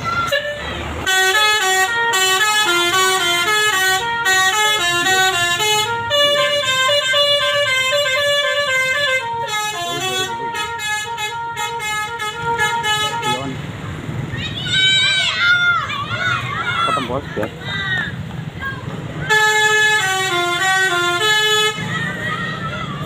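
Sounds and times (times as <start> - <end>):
bus musical horn melody: 0.1 - 13.7, 19.2 - 22.2.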